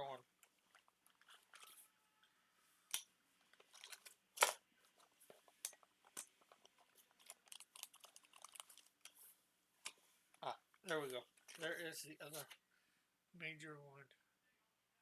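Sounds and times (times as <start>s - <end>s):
hands rummaging through packaging: 3.5s - 9.2s.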